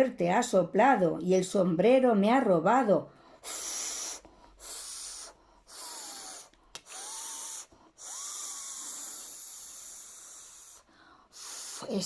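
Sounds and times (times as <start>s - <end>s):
person blowing breathy whooshes: 3.3s - 12.0s.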